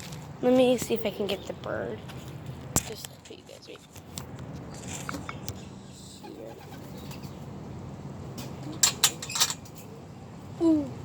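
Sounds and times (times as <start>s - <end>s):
faint background noise: 0.0s - 11.0s.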